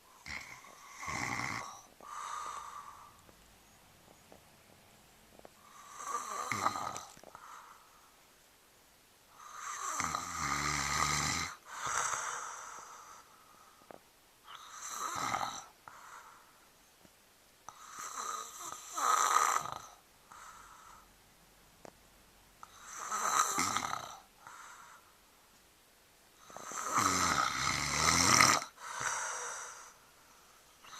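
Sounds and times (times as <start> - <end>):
man snoring: 0.2 - 3.1, 5.6 - 7.3, 9.4 - 13.3, 14.5 - 15.8, 17.7 - 20.6, 22.6 - 24.3, 26.4 - 30.0.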